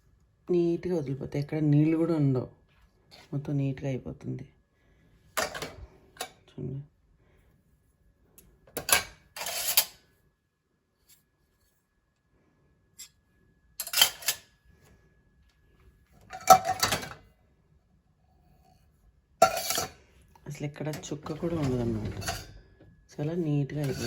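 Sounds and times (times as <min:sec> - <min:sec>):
dishes clinking and clattering: 0:05.4 - 0:06.4, 0:08.7 - 0:10.0, 0:13.8 - 0:14.5, 0:16.3 - 0:17.2, 0:19.4 - 0:20.0, 0:20.9 - 0:23.0, 0:23.7 - 0:24.0.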